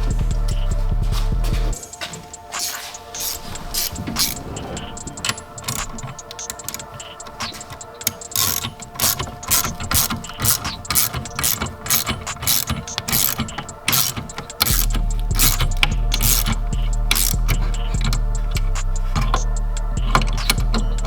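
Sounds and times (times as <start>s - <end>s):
background music with heavy bass: 0.0s - 21.0s
hand ratchet clicking: 1.8s - 21.0s.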